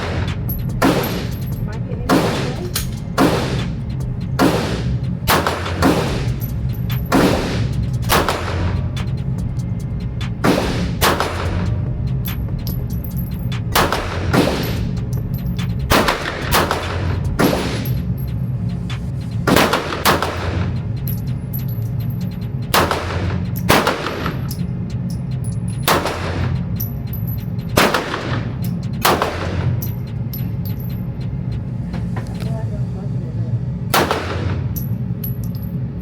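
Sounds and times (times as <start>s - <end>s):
handgun shots: 0.0s - 3.7s, 4.4s - 6.4s, 7.1s - 8.7s, 10.4s - 11.6s, 13.8s - 14.8s, 15.9s - 17.9s, 22.8s - 24.4s, 27.8s - 28.4s, 29.0s - 29.7s, 33.9s - 34.7s
low hum: 0.0s - 36.0s.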